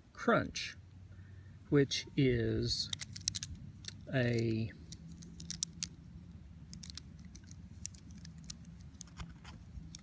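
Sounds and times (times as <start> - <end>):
faint steady hum: 0.0 - 10.0
multi-tool clicks: 2.8 - 6.0.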